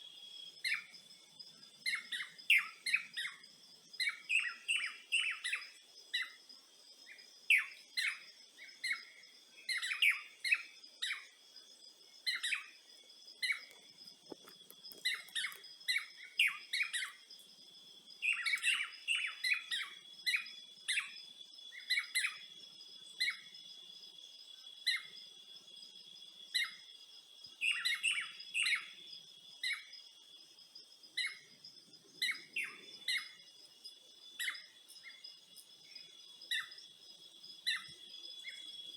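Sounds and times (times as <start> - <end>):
insects droning: 0.0 - 38.9
birds chirping: 18.2 - 21.1, 31.2 - 38.9.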